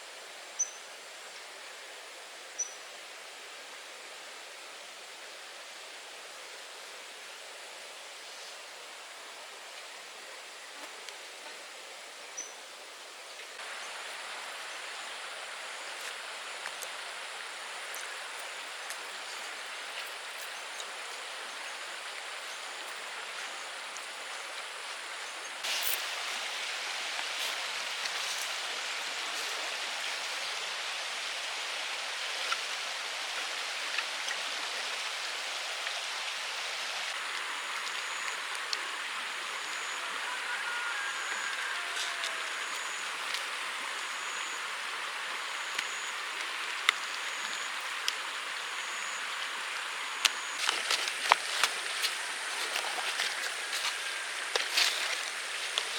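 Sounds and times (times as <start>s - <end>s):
steady rain falling: 13.3s - 55.9s.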